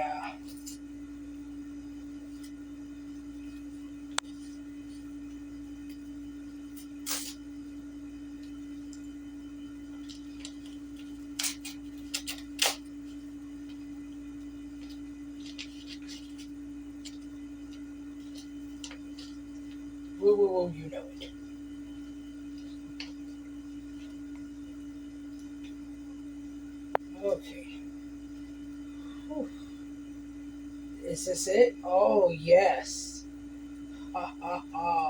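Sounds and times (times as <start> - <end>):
steady electrical hum: 0.0 - 35.0
packaging rustling: 14.7 - 20.0.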